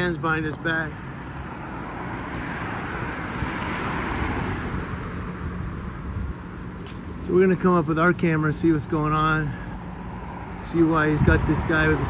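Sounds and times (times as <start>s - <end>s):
car passing by: 1.0s - 5.4s.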